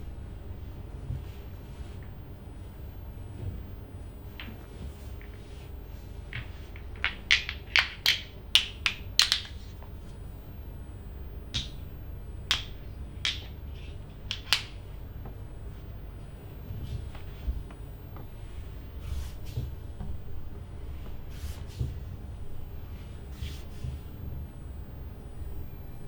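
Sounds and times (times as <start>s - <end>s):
sharp snapping sounds: 14.3s - 14.8s.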